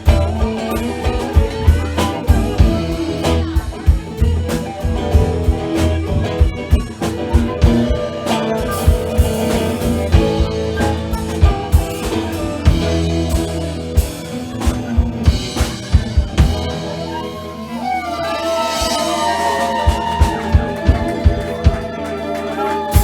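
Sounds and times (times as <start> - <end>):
drum kit beat: 0.0 - 23.0
live blues band playing: 0.0 - 23.0.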